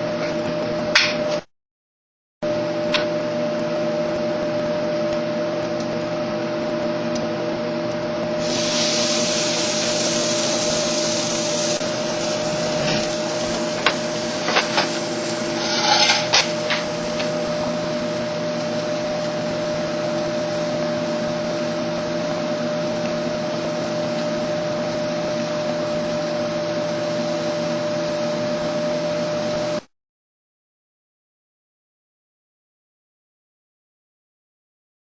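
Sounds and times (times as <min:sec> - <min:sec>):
whirring fan hum: 0:02.4 - 0:29.9.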